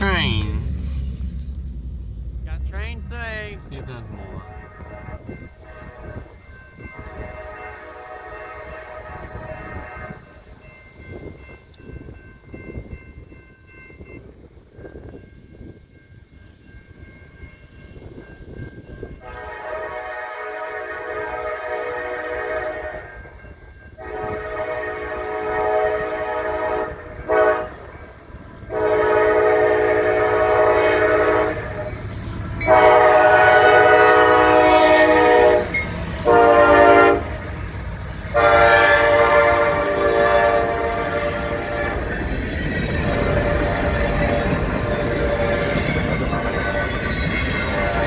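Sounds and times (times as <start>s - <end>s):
train rumble and wheels on rails: 0.0s - 48.0s
locomotive air horn blasts: 4.1s - 10.5s, 19.2s - 23.4s, 24.0s - 27.9s, 28.7s - 37.5s, 38.3s - 42.1s.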